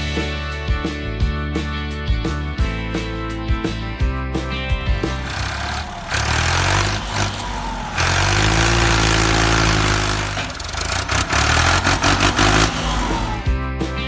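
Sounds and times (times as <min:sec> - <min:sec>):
tractor engine running: 0:04.7 - 0:14.0.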